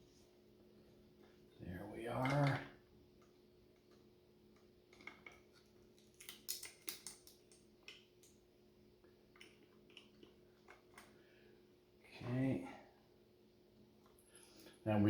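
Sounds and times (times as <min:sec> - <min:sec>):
faint steady hum: 0:00.0 - 0:15.0
small lamp parts clicking: 0:04.6 - 0:08.4.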